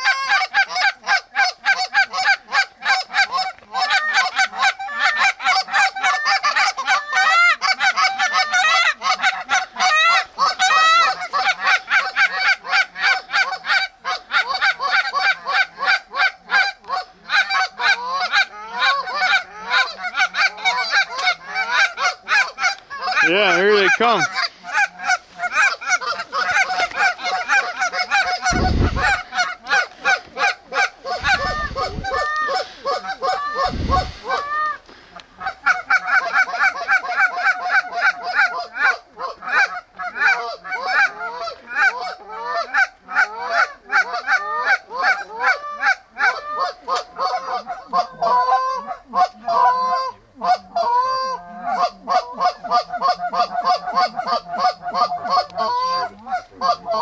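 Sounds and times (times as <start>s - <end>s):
geese honking: 0.0s - 38.6s, 39.2s - 57.0s
short low rumbles: 28.4s - 29.3s, 31.1s - 32.2s.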